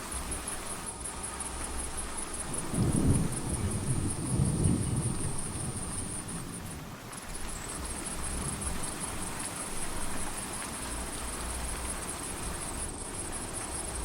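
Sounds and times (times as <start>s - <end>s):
falling rain hiss: 0.0s - 14.0s
distant thunder rumble: 2.2s - 10.3s.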